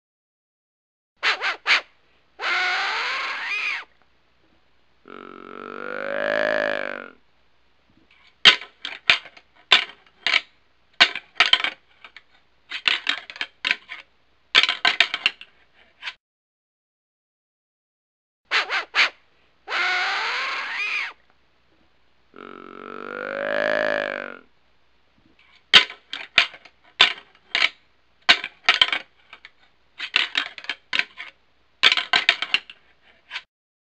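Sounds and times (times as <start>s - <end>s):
antlers clacking and grinding: 8.2s - 16.2s, 25.4s - 33.4s.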